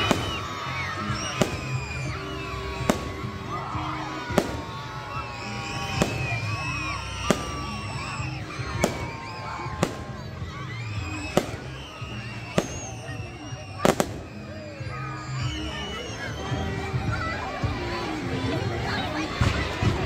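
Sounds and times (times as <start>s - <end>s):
fireworks bangs: 0.0s - 0.5s, 1.4s - 1.8s, 2.8s - 3.5s, 4.2s - 4.9s, 5.6s - 6.6s, 7.2s - 8.0s, 8.7s - 9.2s, 9.8s - 10.3s, 11.3s - 11.8s, 12.6s - 13.1s, 13.8s - 14.3s
music playing: 0.0s - 20.0s.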